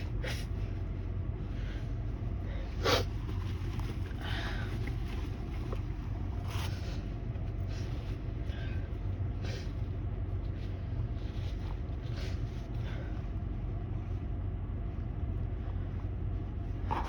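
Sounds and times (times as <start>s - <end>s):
steady low hum: 0.0s - 17.0s
faint sniffs: 2.5s - 5.1s.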